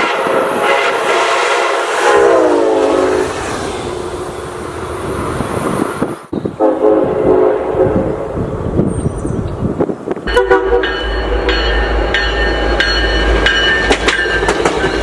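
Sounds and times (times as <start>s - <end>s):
train air horn: 0.0s - 3.6s, 6.4s - 8.4s, 10.3s - 10.9s
passing train rumble: 0.0s - 15.0s.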